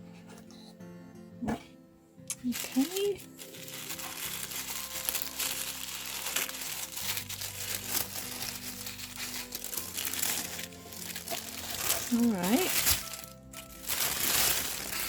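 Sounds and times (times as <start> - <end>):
paper packaging crinkling: 2.4 - 15.0.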